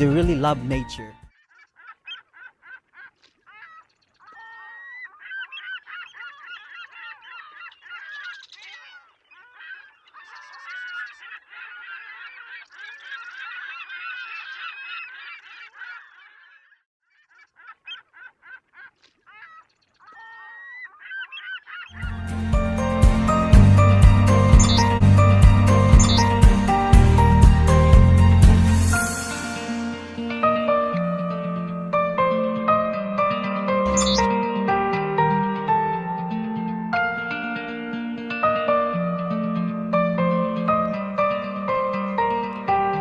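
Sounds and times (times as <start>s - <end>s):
geese honking: 0.0s - 27.3s, 33.8s - 34.4s.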